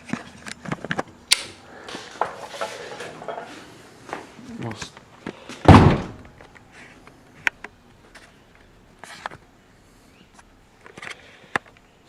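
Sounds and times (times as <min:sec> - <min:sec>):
truck door thump: 0:05.7 - 0:06.2.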